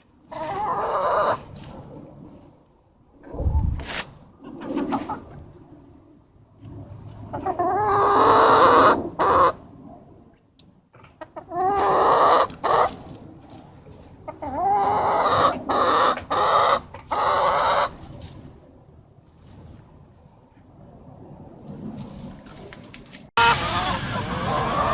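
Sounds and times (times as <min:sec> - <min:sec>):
chickens calling: 0:00.3 - 0:01.5, 0:07.3 - 0:09.6, 0:11.0 - 0:13.2, 0:14.2 - 0:18.2, 0:23.4 - 0:24.9.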